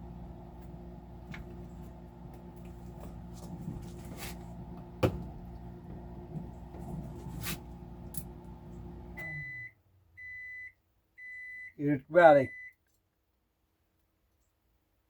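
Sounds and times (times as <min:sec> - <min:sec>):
microwave oven humming: 0:00.0 - 0:10.6
short beeps: 0:09.2 - 0:11.8, 0:12.4 - 0:12.8.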